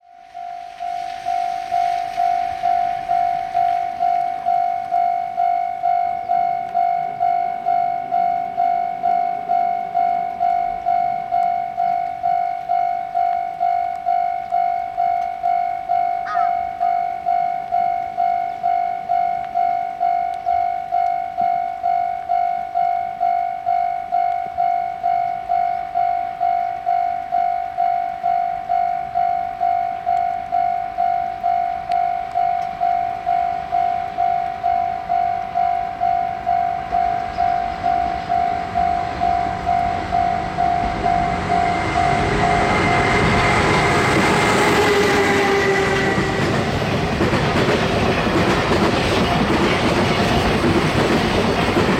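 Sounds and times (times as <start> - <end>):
level crossing alarm ringing: 0.1 - 47.6
freight train rumbling past: 0.2 - 6.4, 27.4 - 51.9.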